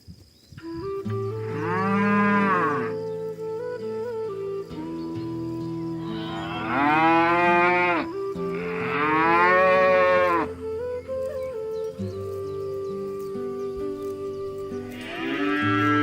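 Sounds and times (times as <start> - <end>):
soft background music: 0.6 - 16.0
cow mooing: 1.4 - 3.0, 6.0 - 10.5, 14.8 - 16.0.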